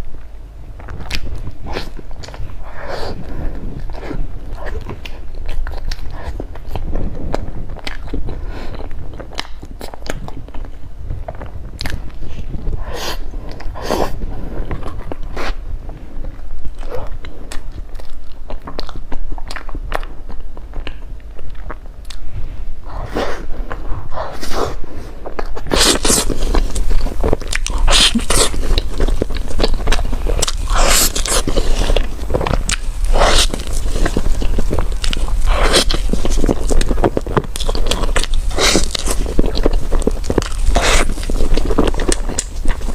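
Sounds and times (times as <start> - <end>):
person chewing food: 0.7 - 42.9
crisp crunching: 22.9 - 42.9.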